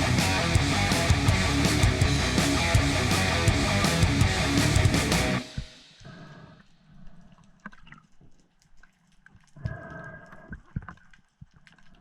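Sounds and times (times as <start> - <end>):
underwater clicks and crackles: 7.0 - 12.0.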